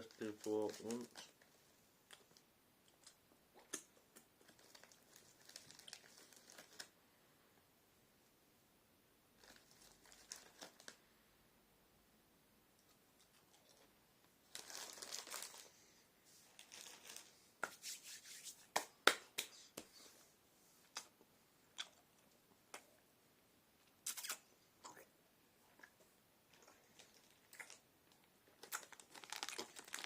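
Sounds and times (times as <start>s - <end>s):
plastic packet crinkling: 0.0s - 1.4s, 4.4s - 6.9s, 9.4s - 11.0s, 14.5s - 15.8s, 16.6s - 17.3s, 28.6s - 30.0s.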